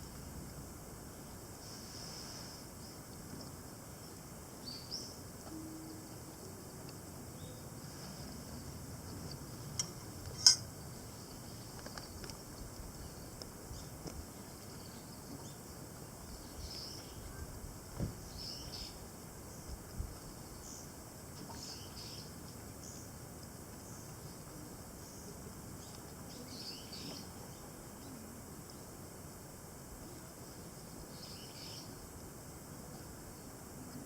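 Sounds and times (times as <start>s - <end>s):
faint bird chirps: 23.9s - 28.9s.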